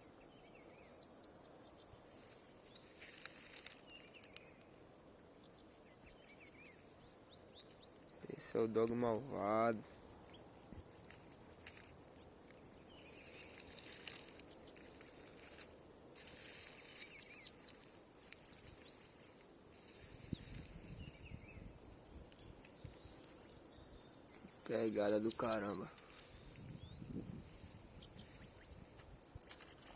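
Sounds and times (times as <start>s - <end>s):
bird singing high thin notes: 24.3s - 26.2s.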